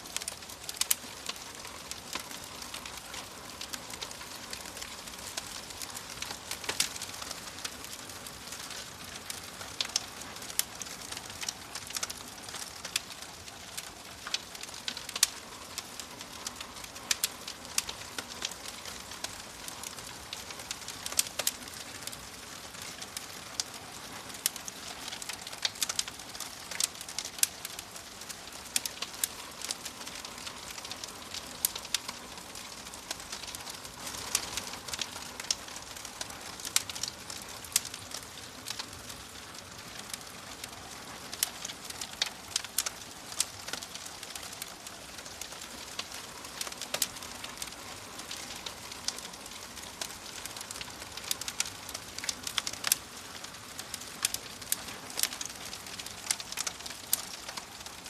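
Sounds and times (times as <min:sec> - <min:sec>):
fire crackling: 0:00.0 - 0:58.0.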